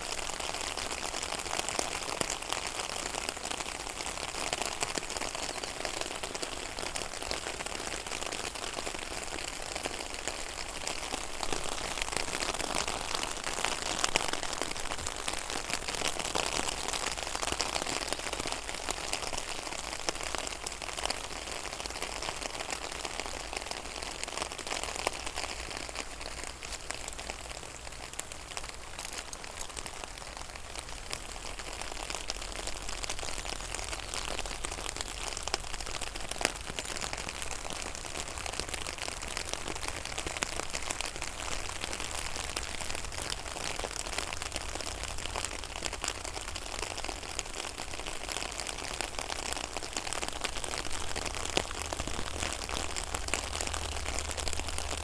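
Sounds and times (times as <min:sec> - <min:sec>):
rain falling on pond water: 0:00.0 - 0:55.0.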